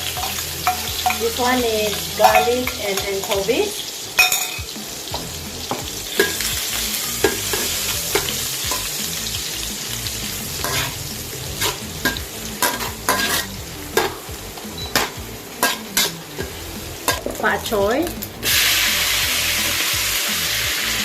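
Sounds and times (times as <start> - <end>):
garlic sizzling in hot oil: 0.0 - 21.0
spatula scraping a pan: 4.6 - 14.4.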